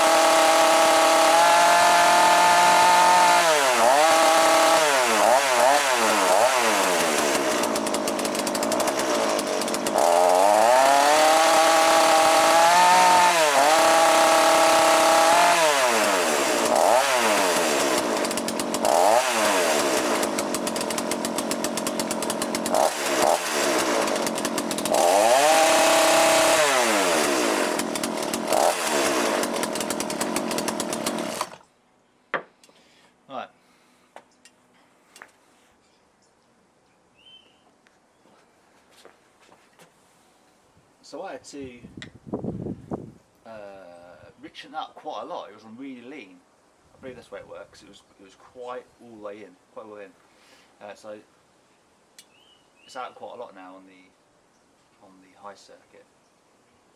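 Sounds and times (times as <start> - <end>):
chainsaw engine revving: 0.0 - 31.6.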